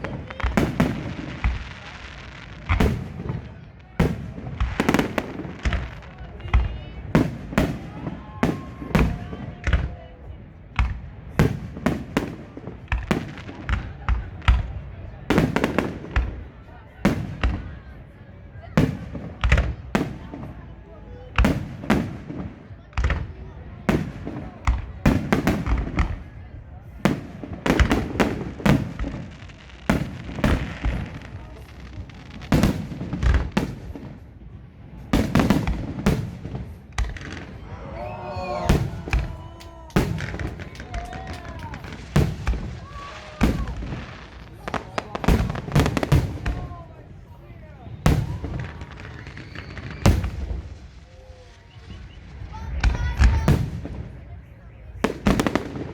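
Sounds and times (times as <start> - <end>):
fireworks shells booming: 0.0 - 9.5, 38.3 - 47.3, 47.9 - 54.2
fireworks bangs with echo: 0.0 - 55.9
fireworks crackling: 0.0 - 55.9.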